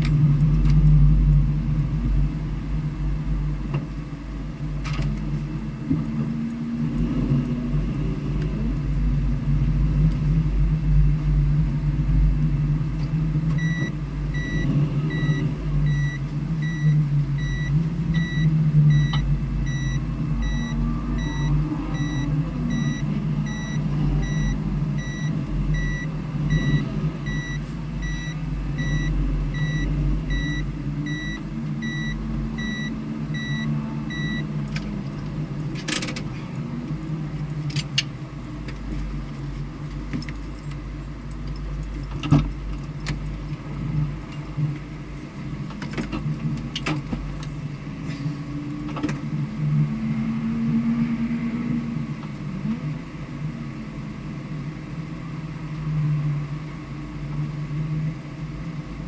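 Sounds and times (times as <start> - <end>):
sharp clicks and knocks: 34.7 - 36.3, 45.7 - 47.6.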